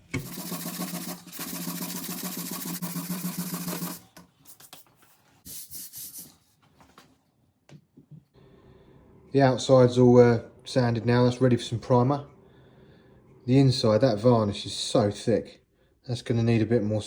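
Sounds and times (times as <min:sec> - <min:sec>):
sanding scratchy hiss: 0:00.2 - 0:04.0.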